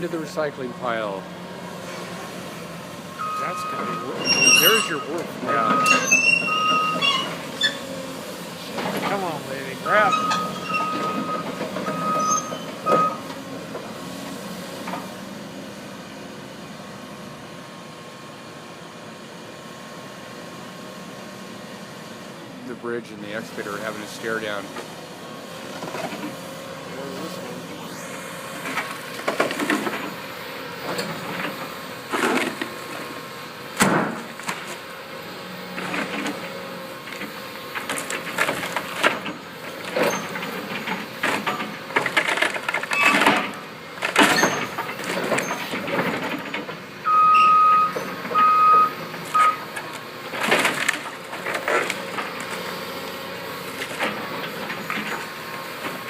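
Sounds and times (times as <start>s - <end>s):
excavator engine drone: 0.0s - 56.0s
backup alarm beeping: 3.2s - 4.7s, 5.6s - 7.0s, 10.1s - 13.2s, 47.0s - 49.7s
wood and metal crunching: 37.2s - 46.8s, 49.2s - 52.7s.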